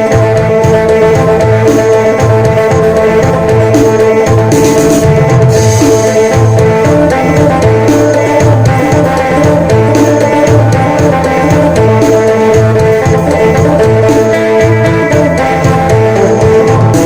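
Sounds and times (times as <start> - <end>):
bass: 0.0 - 17.0
drum beat: 0.0 - 17.0
held drone: 0.0 - 17.0.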